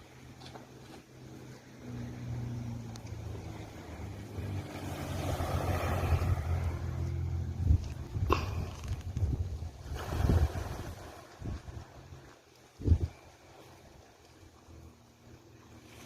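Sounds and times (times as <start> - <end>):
engine running steadily: 0.0 - 16.0
wind buffeting microphone: 5.6 - 13.3.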